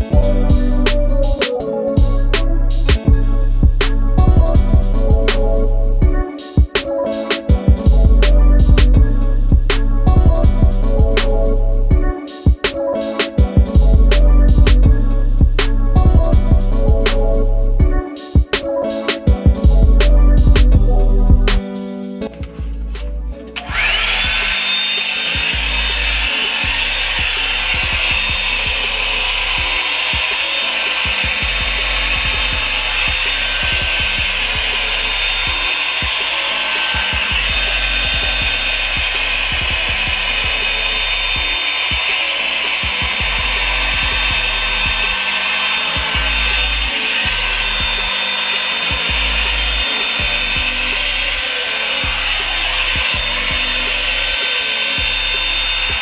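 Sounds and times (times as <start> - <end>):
blow dryer running: 23.5 - 56.0.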